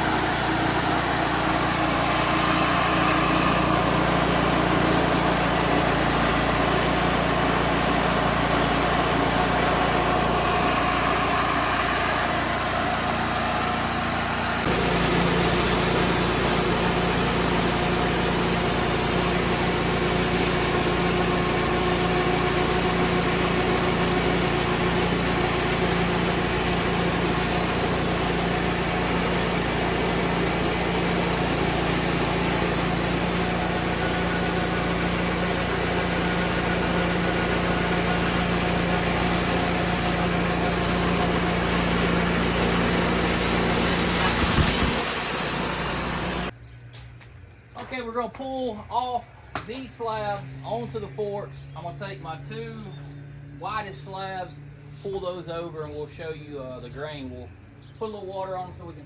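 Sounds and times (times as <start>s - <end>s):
sawmill engine running: 0.0s - 46.5s.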